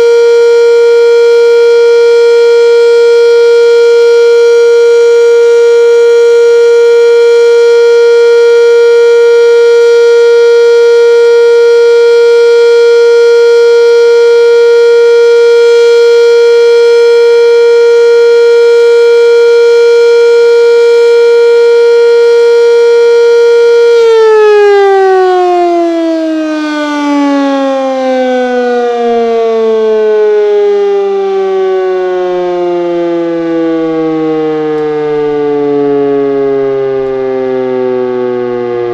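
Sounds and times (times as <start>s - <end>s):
warning siren steady tone: 0.0s - 38.9s.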